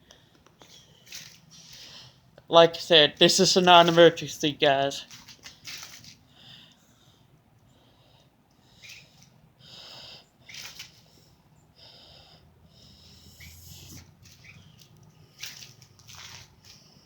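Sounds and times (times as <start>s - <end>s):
baby bird cheeping: 13.1s - 14.9s.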